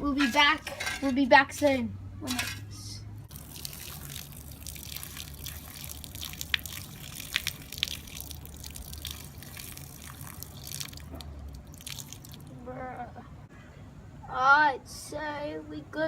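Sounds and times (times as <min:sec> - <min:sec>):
water splashing and dripping: 0:03.3 - 0:12.5.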